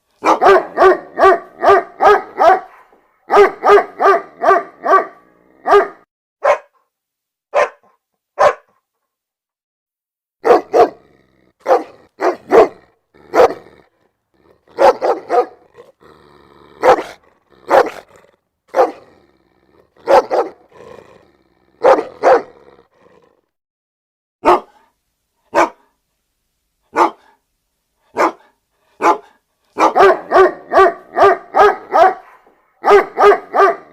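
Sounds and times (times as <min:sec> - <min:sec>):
dog barking loudly: 0:00.2 - 0:06.8, 0:07.5 - 0:08.7, 0:10.4 - 0:13.8, 0:14.6 - 0:16.0, 0:16.8 - 0:19.2, 0:20.0 - 0:20.8, 0:21.7 - 0:22.7, 0:24.4 - 0:24.8, 0:25.5 - 0:25.9, 0:26.9 - 0:27.4, 0:28.1 - 0:33.9.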